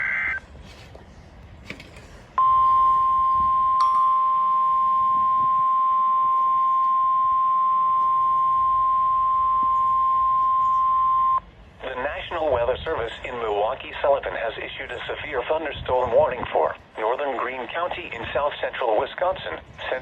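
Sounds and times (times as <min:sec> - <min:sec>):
faint radio static: 0:00.0 - 0:00.5, 0:06.7 - 0:20.0
steady high alarm tone: 0:02.4 - 0:11.4.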